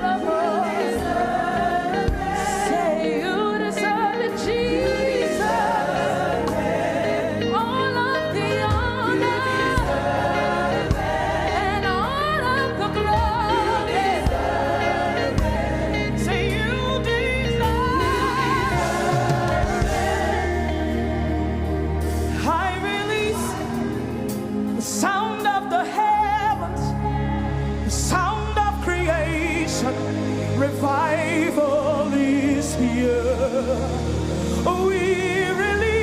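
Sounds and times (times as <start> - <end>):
gospel choir singing: 0.0 - 36.0
live band with low beat: 5.4 - 7.6, 8.4 - 12.1, 12.9 - 25.7.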